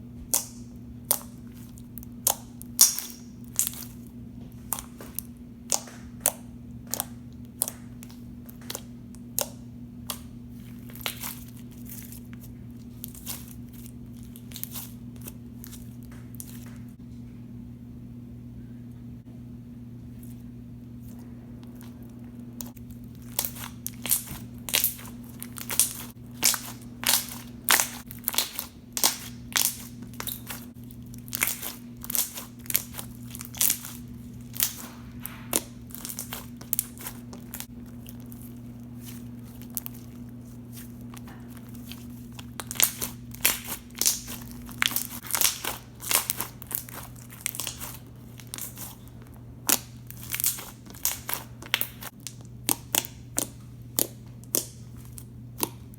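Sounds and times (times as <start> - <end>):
steady low hum: 0.0 - 55.9
slime popping and clicking: 2.2 - 3.8.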